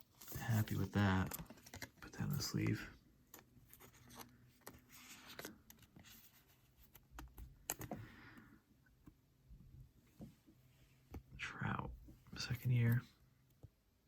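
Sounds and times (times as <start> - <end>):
trading cards handled: 0.1 - 8.4.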